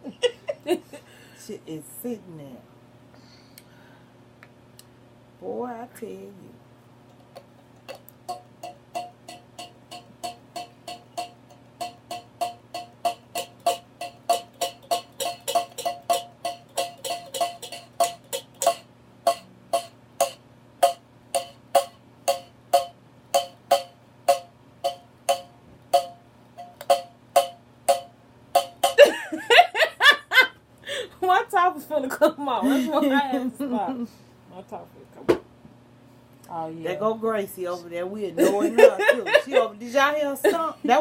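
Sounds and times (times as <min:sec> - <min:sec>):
rhythmic tapping knocks: 0:07.9 - 0:30.4.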